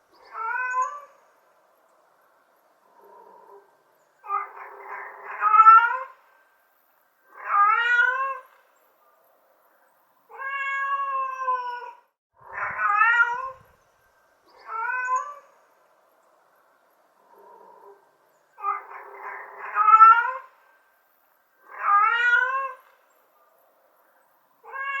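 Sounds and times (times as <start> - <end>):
cat meowing: 0.3 - 1.1, 4.2 - 6.1, 7.4 - 8.5, 10.3 - 13.6, 14.6 - 15.4, 18.6 - 20.5, 21.6 - 22.9, 24.6 - 25.0.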